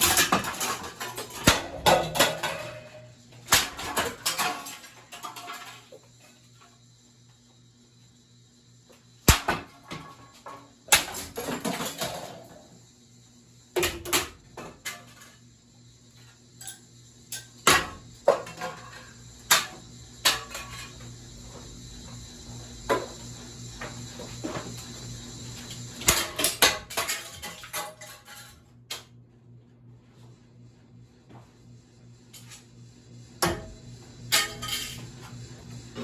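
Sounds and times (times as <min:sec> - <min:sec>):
plates smashing in fan blades: 0:00.0 - 0:05.9, 0:09.2 - 0:12.6, 0:17.4 - 0:21.0, 0:26.0 - 0:28.5, 0:33.4 - 0:35.0
fan motor humming: 0:06.8 - 0:28.3.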